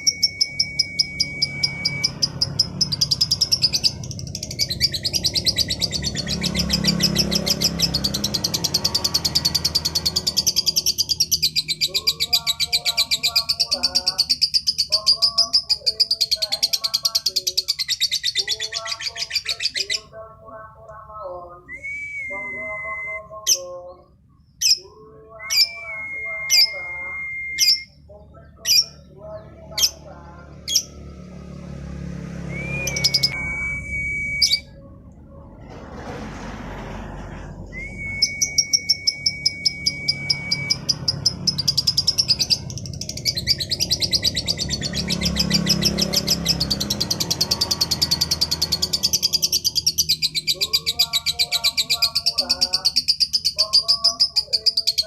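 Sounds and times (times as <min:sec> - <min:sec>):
lovebird chattering and chirping: 0:00.0 - 0:20.2, 0:24.5 - 0:25.9, 0:32.8 - 0:33.4, 0:38.2 - 0:55.0.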